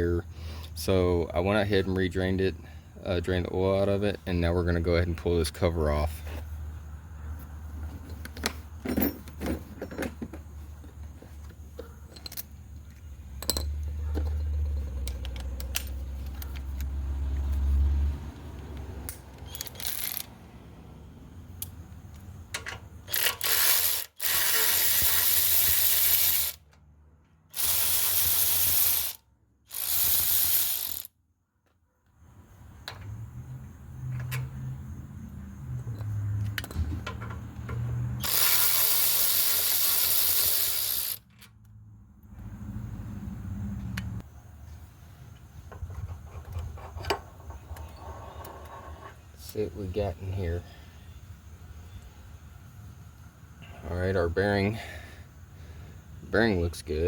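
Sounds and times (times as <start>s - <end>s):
ratchet wrench ratcheting: 19.1s - 20.4s, 23.0s - 26.7s, 27.5s - 31.1s, 38.2s - 41.6s.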